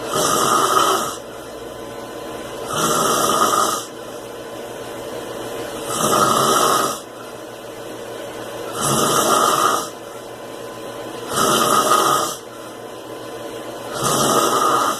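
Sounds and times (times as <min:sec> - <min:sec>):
man snoring: 0:00.0 - 0:01.3, 0:02.6 - 0:04.0, 0:05.8 - 0:07.1, 0:08.7 - 0:10.0, 0:11.2 - 0:12.5, 0:13.9 - 0:14.9.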